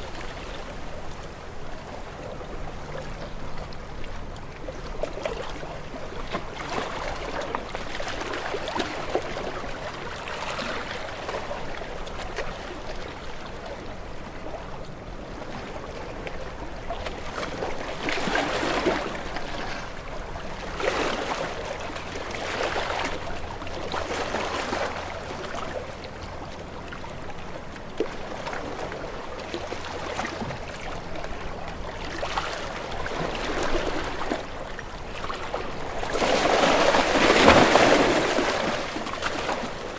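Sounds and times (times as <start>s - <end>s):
small waves lapping: 0.0s - 39.9s.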